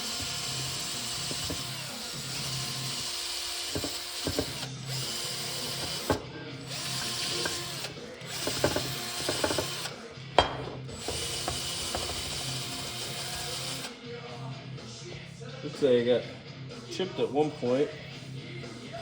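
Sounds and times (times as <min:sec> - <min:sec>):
rotary tool cutting: 0:00.0 - 0:10.0, 0:10.9 - 0:13.9.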